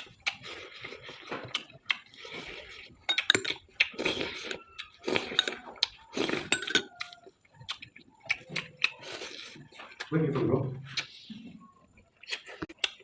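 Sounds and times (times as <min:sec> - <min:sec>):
metal spoon clinking on plate: 0:06.5 - 0:06.9.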